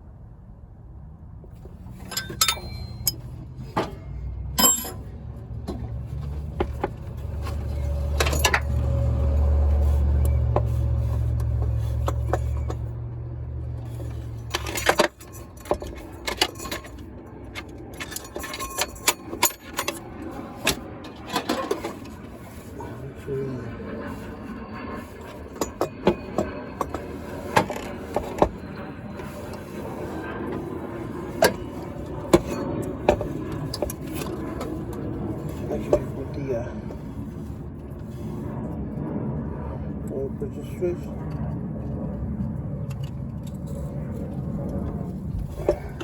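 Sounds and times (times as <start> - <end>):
low engine rumble: 0.0 - 46.0
metal tools clinking: 1.9 - 5.1, 7.4 - 9.5, 13.9 - 22.0.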